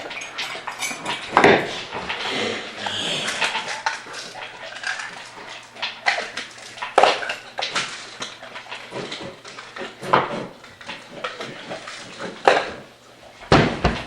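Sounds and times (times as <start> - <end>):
clattering and knocks: 0.0 - 2.2.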